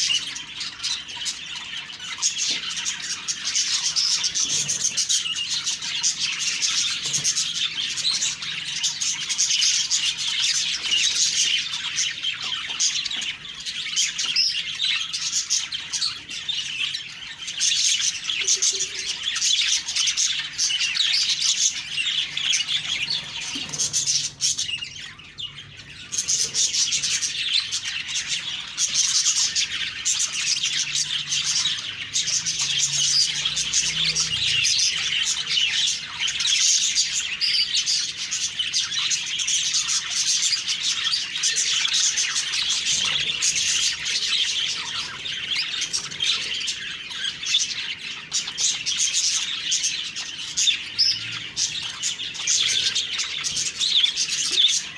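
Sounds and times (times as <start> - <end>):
budgerigars chirping and warbling: 0.0 - 54.9.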